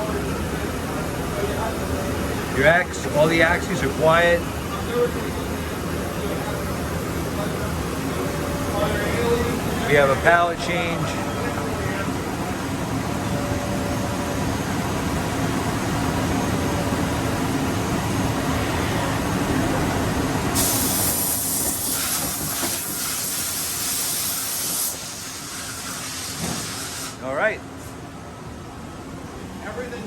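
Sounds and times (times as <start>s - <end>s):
machine running with low hum: 0.0s - 26.2s
loud hiss: 20.5s - 27.2s.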